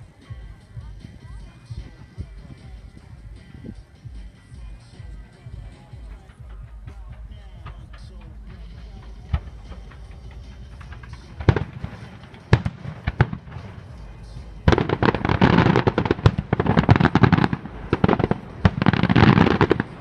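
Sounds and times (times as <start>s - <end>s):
fireworks banging and crackling: 5.1s - 20.0s.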